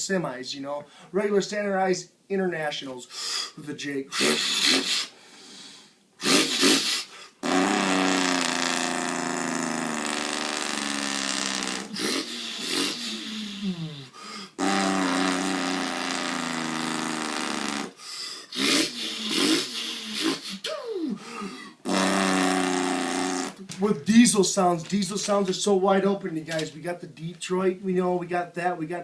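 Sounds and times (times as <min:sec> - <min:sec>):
man imitating diesel engine: 0:06.2 - 0:23.6.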